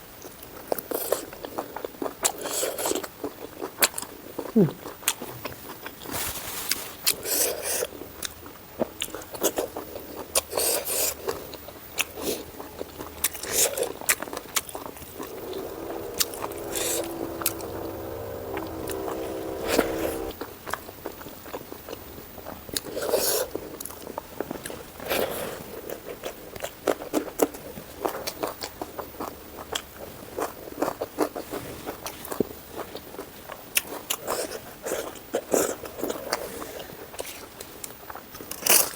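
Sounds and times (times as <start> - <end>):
steady pitched tone: 15.2 - 20.4.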